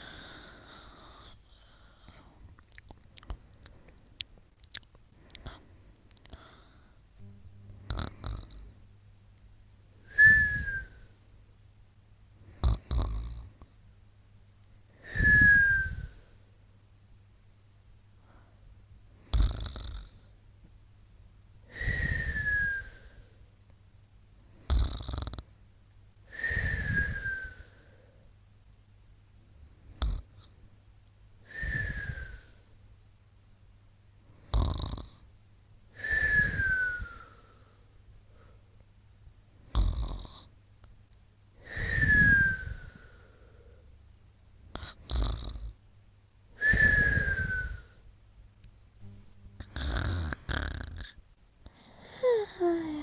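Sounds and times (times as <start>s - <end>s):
person snoring with whistle: 7.3s - 8.7s, 19.3s - 20.2s, 21.7s - 23.1s, 24.7s - 25.4s, 26.4s - 27.6s, 31.5s - 32.5s, 36.0s - 37.4s, 39.7s - 40.4s, 41.7s - 43.1s, 44.8s - 45.8s, 46.6s - 48.0s, 49.0s - 51.2s.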